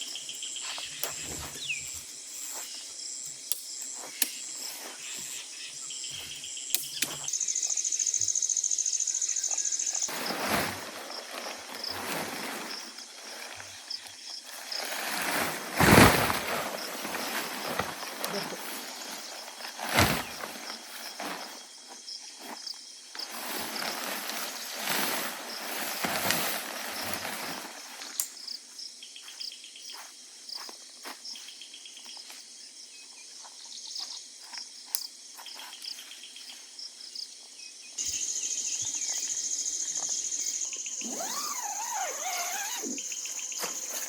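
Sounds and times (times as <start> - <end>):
insects chirping in pulses: 0.0 - 30.7, 31.4 - 44.0
high-pitched insect trill: 0.0 - 44.0
handling rustling and scraping: 0.6 - 2.9, 9.5 - 28.2, 41.0 - 44.0.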